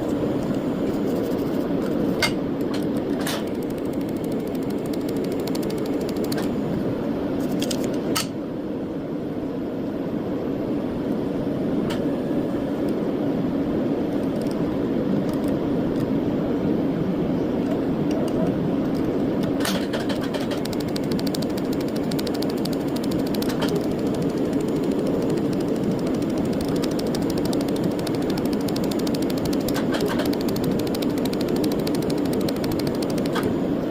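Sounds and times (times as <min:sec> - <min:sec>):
workshop machinery whirring: 0:00.0 - 0:08.2, 0:19.0 - 0:33.9
sharp clicks: 0:02.6 - 0:06.5, 0:18.9 - 0:33.5
fast even ticks: 0:03.0 - 0:06.5, 0:20.2 - 0:33.5.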